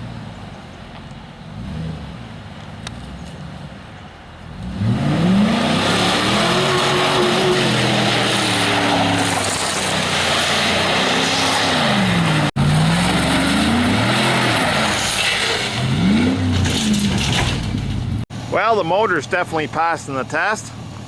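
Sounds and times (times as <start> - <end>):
truck engine revving: 1.5 - 3.9, 4.5 - 18.3.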